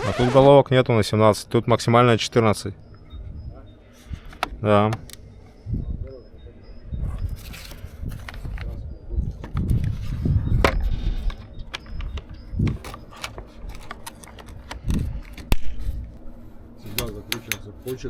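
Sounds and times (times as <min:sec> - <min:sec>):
low rumbling handling noise: 0:09.4 - 0:18.0
metal tools clicking and knocking: 0:11.8 - 0:15.5, 0:16.9 - 0:18.0.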